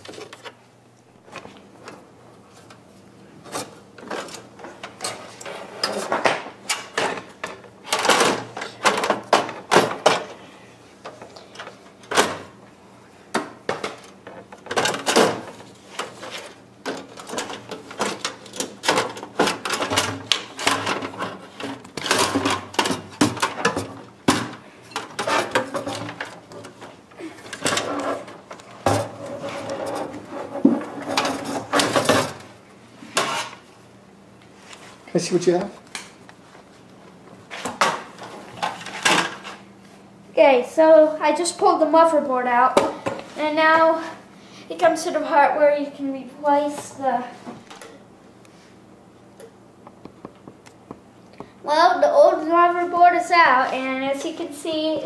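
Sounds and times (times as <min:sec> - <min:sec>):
clicks and scrapes in metal computer case: 0:14.6 - 0:26.9, 0:27.5 - 0:32.4.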